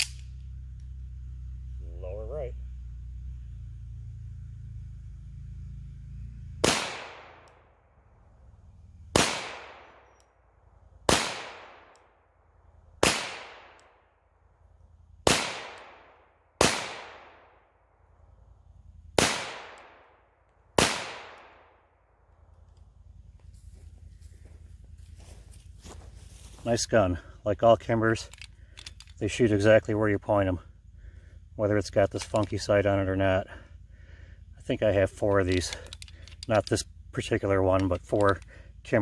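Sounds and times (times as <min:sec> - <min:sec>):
low rumble: 0:00.0 - 0:11.1, 0:13.6 - 0:39.0
pistol shots ringing out: 0:06.6 - 0:07.6, 0:09.1 - 0:10.2, 0:11.1 - 0:12.0, 0:13.0 - 0:13.9, 0:15.2 - 0:17.5, 0:19.2 - 0:20.1, 0:20.8 - 0:21.7.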